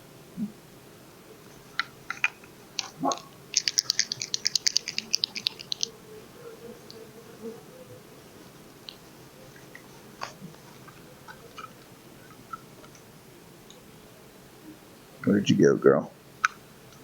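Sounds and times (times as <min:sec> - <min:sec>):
paint pen ball rattling: 0:03.6 - 0:05.9.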